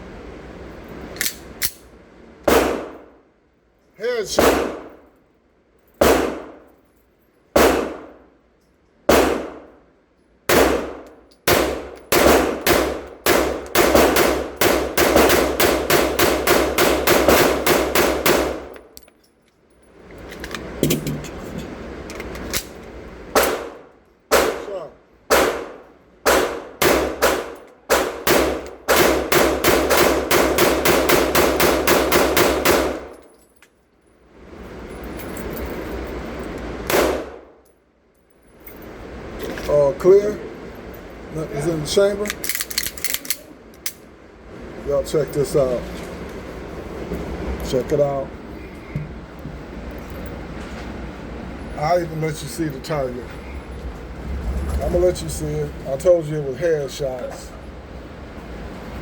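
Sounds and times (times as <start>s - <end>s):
pistol shots with ringing tail: 2.5s - 3.1s, 4.3s - 5.0s, 6.0s - 6.7s, 7.6s - 8.2s, 9.1s - 9.7s, 10.5s - 18.7s, 23.4s - 24.7s, 25.3s - 33.2s, 36.9s - 37.5s.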